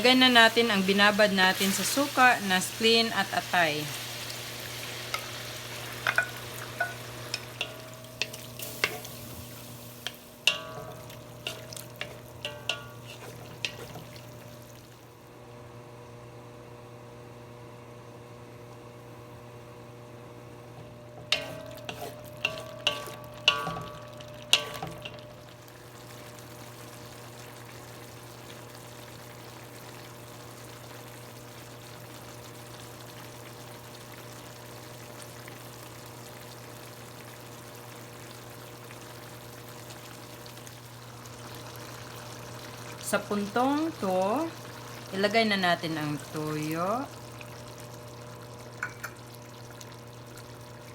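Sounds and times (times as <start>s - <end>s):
meat sizzling in a pan: 0.0s - 15.2s, 21.3s - 50.9s
metal utensil clinking and scraping: 5.9s - 14.2s, 21.3s - 25.3s.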